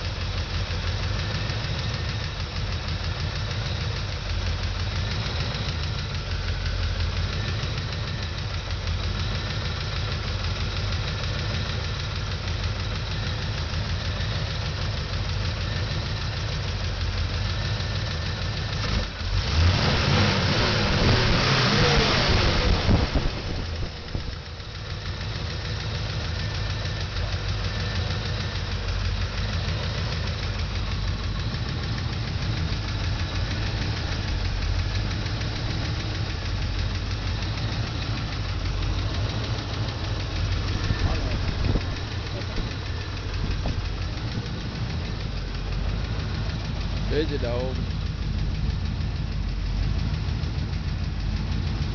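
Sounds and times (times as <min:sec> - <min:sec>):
car engine idling and revving: 0:00.0 - 0:51.9.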